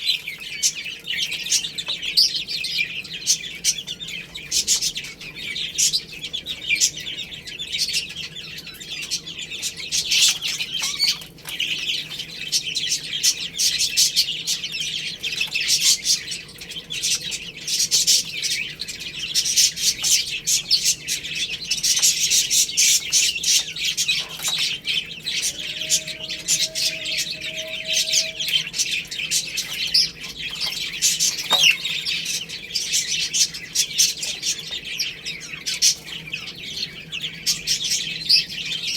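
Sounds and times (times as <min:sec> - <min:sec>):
baby chicks peeping: 0:00.0 - 0:38.9
lower-pitched call: 0:25.2 - 0:29.4.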